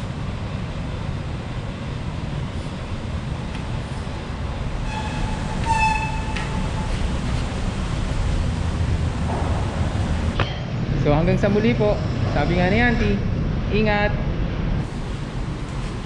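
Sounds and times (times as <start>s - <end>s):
low traffic rumble: 0.0s - 16.0s
vehicle horn: 4.8s - 7.2s.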